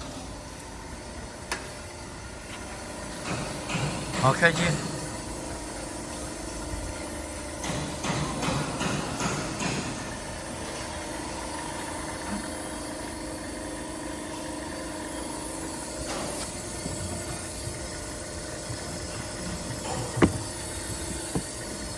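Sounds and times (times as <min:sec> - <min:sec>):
machine humming and rattling: 0:00.0 - 0:21.9
single knock: 0:20.1 - 0:21.5.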